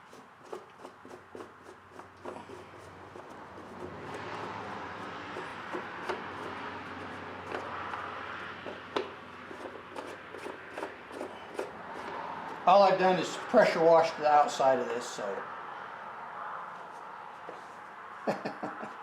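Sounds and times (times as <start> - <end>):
plastic rustling and scraping: 0.0 - 12.8.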